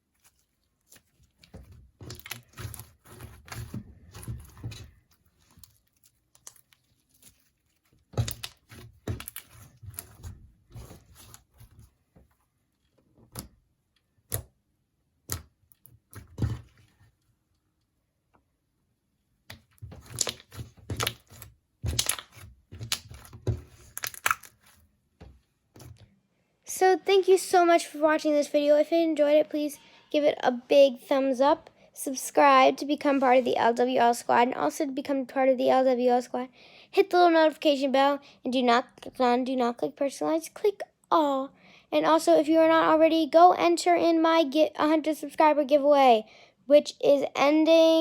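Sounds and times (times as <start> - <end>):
slime squishing with wet clicks: 0.1 - 10.3, 13.3 - 16.4, 23.9 - 24.7.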